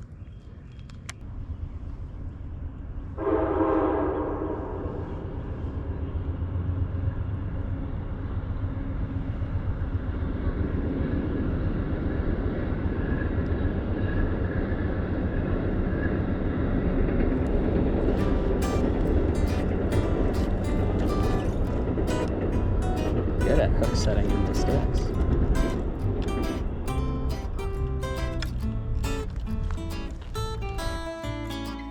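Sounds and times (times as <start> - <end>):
passing train rumble: 1.3 - 31.8
train air horn: 3.2 - 5.3.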